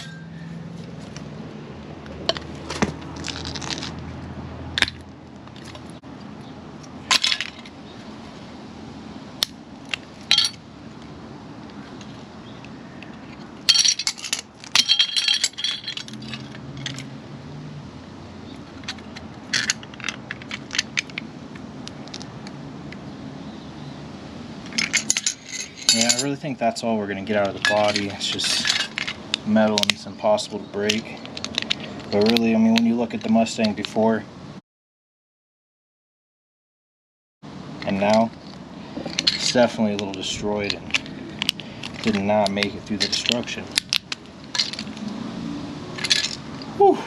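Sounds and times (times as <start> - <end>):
metal tool striking metal: 0.0 - 0.5.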